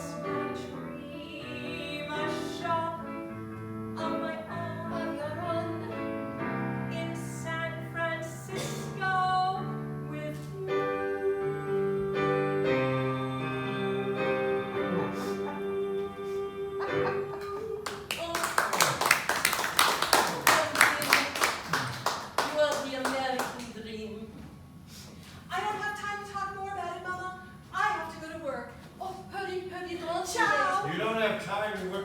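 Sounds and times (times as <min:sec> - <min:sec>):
woman singing: 0:00.0 - 0:03.4, 0:04.0 - 0:19.0
instrumental accompaniment: 0:07.8 - 0:17.8.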